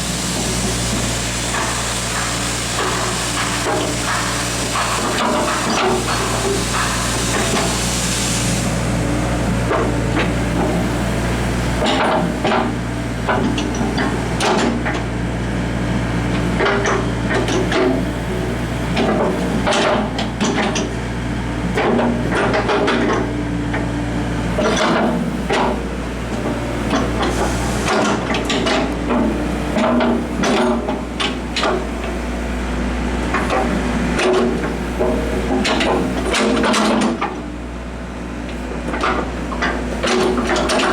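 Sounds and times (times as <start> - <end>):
excavator engine hum: 0.0 - 40.9
sharp knocks and clanks: 0.4 - 7.9, 11.8 - 15.1, 19.0 - 20.9, 33.3 - 37.4, 38.9 - 40.9.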